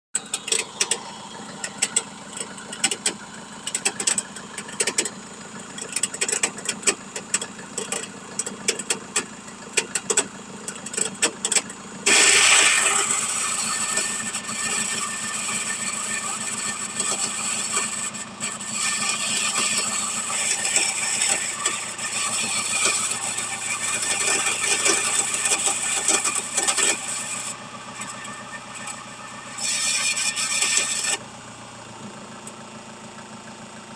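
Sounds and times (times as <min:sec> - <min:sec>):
alternator ticking and rattling: 0:00.2 - 0:33.4
van engine running: 0:00.2 - 0:33.9.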